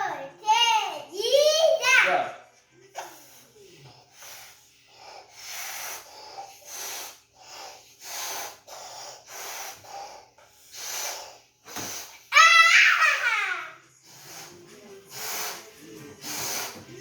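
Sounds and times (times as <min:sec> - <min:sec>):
blowing up a balloon: 0:05.3 - 0:12.3, 0:14.0 - 0:16.9.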